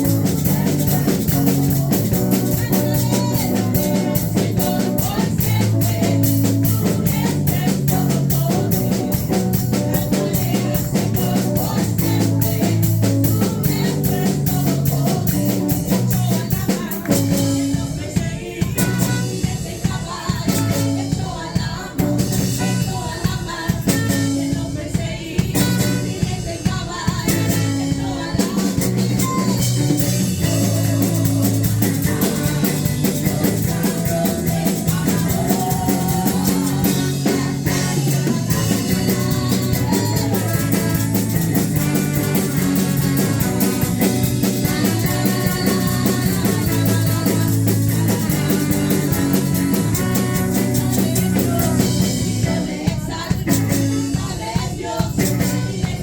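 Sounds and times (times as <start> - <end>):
drum kit playing: 0.0 - 56.0
sustained band chords: 28.8 - 52.8.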